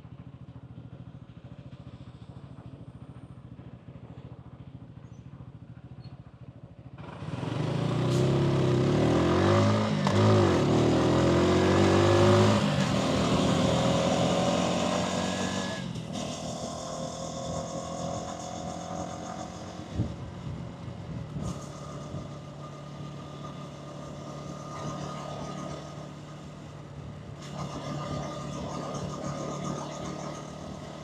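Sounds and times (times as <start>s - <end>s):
motorcycle engine idling: 0.0s - 7.5s.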